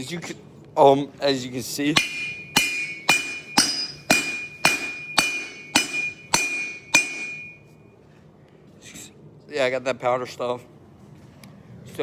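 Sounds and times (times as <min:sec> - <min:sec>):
hammer striking metal on anvil: 0:01.9 - 0:07.7.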